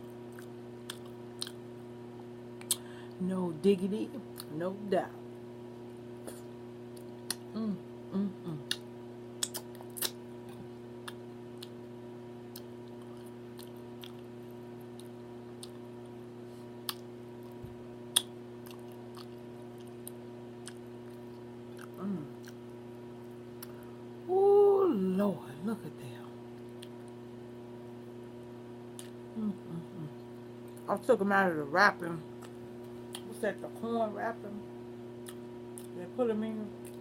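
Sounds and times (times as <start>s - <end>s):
closed-mouth humming: 0.0s - 37.0s
low background hum: 0.0s - 37.0s
woman chewing food: 0.2s - 1.6s, 8.6s - 11.8s, 12.5s - 16.2s, 16.8s - 22.8s
lip smacks: 2.6s - 2.9s, 6.3s - 7.4s, 8.6s - 10.2s, 18.1s - 22.6s, 28.9s - 29.2s.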